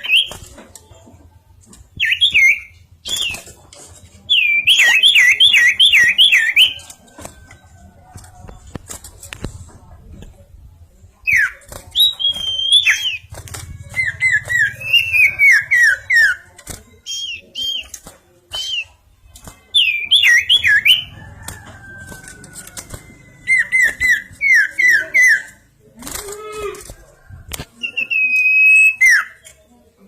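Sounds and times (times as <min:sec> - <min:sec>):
bird whistled song: 0:02.0 - 0:03.4, 0:04.3 - 0:06.8, 0:11.2 - 0:13.3, 0:13.9 - 0:16.4, 0:17.0 - 0:18.9, 0:19.8 - 0:21.1.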